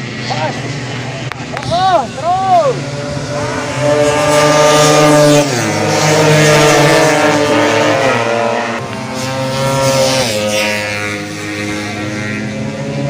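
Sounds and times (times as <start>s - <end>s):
scooter engine revving high: 0.0s - 13.0s.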